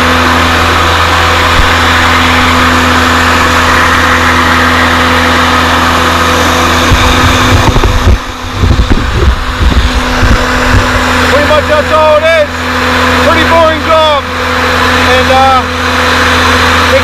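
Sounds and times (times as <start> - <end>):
truck engine and blower running: 0.0 - 17.0
low thumps: 1.4 - 2.5, 6.6 - 11.3.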